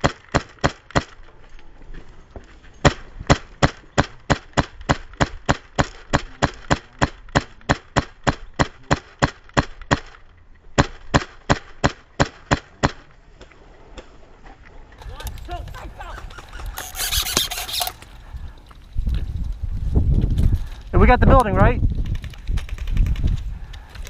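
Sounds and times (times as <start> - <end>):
airsoft rifle shots: 10.8 - 13.1.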